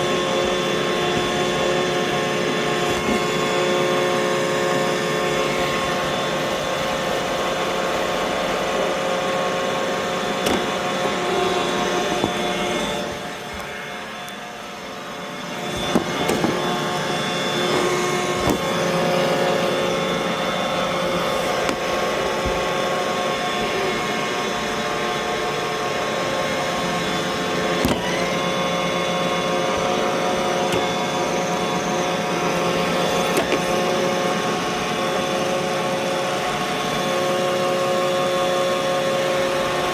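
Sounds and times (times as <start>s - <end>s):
robot vacuum running: 0.0s - 39.9s.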